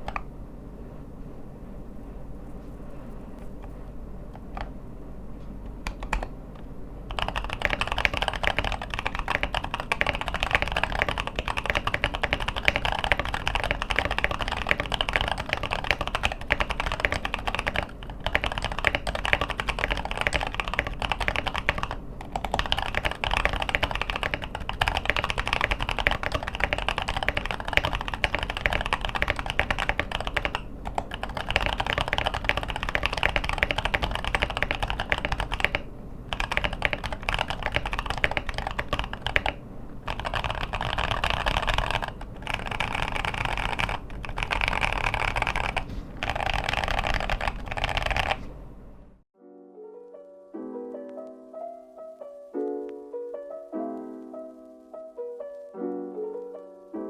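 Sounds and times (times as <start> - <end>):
mechanical keyboard typing: 0.0 - 0.3, 5.8 - 6.4, 7.1 - 48.4.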